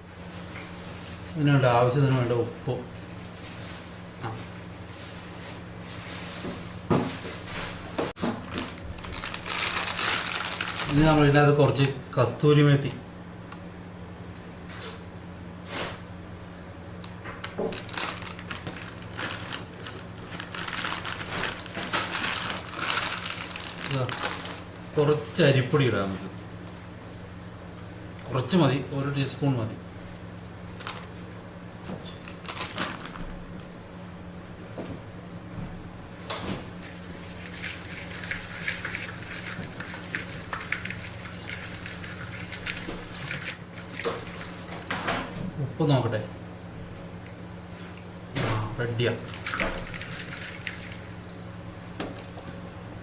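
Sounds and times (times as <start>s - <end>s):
dried leaves rustling and crackling: 8.5s - 11.4s, 17.4s - 25.0s, 30.8s - 31.3s, 32.2s - 33.2s, 36.8s - 44.6s.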